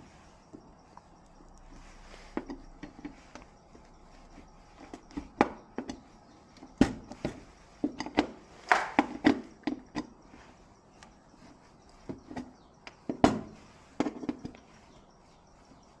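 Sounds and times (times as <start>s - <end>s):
tools clicking and knocking: 2.4s - 3.5s, 6.6s - 10.1s.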